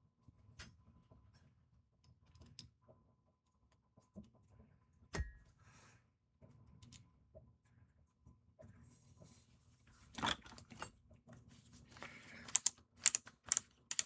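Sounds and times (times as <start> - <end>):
small parts and tools handled: 11.9 - 14.0.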